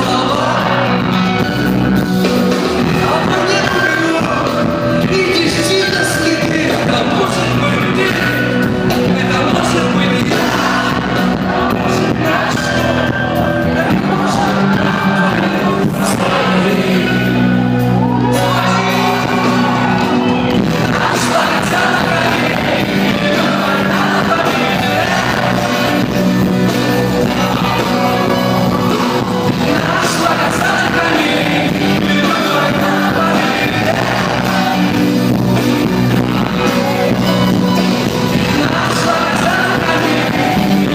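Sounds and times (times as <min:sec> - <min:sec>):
rock song with singing: 0:00.0 - 0:40.9
shouts and yells: 0:10.1 - 0:22.8, 0:26.6 - 0:31.7.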